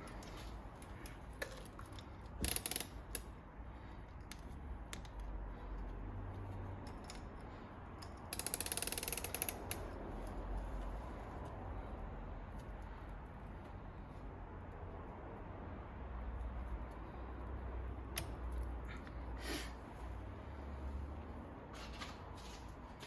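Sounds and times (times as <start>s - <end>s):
bicycle chain ratcheting clicks: 0.8s - 3.4s, 8.0s - 10.3s.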